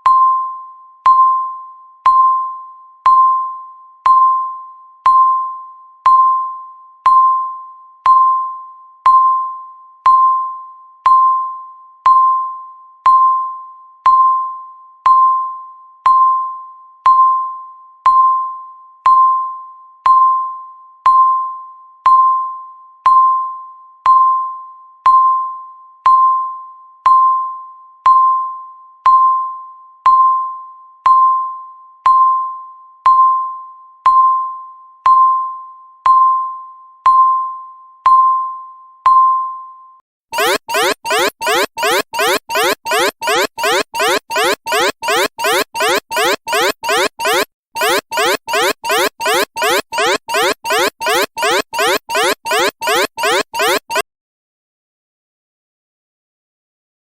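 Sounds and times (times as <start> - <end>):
electronic timer tick tone: 40.4 - 54.0.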